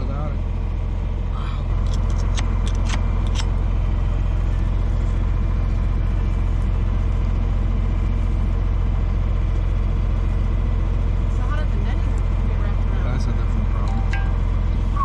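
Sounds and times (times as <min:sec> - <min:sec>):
tractor engine running: 0:00.0 - 0:15.0
sharp clicks: 0:01.8 - 0:03.5.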